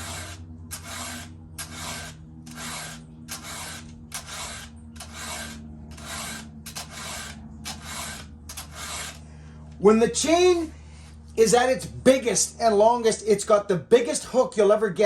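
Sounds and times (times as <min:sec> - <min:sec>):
file rasping on saw chain: 0:00.0 - 0:09.2.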